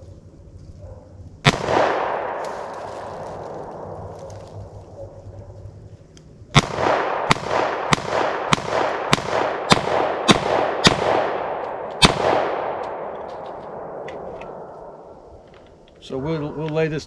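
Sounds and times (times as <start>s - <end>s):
pistol shots with ringing echo: 1.4s - 4.9s, 6.5s - 15.4s.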